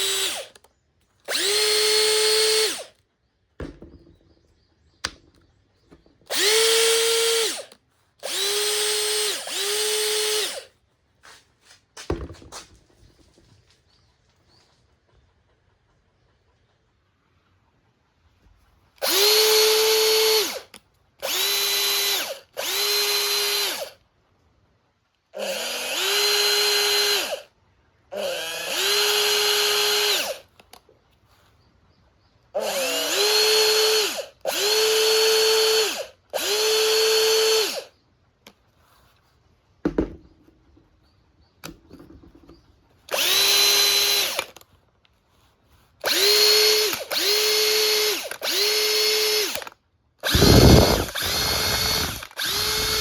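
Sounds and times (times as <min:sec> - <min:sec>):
cordless drill motor whining: 0:00.0 - 0:03.0, 0:05.9 - 0:10.7, 0:19.0 - 0:24.0, 0:25.4 - 0:27.5, 0:28.1 - 0:30.7, 0:32.6 - 0:38.0, 0:43.1 - 0:44.6, 0:46.0 - 0:53.0.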